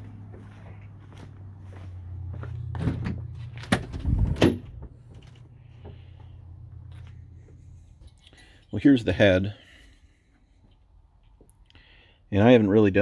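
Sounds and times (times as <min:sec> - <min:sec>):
steady low hum: 0:00.0 - 0:11.2
light clicks of parts: 0:05.0 - 0:08.8.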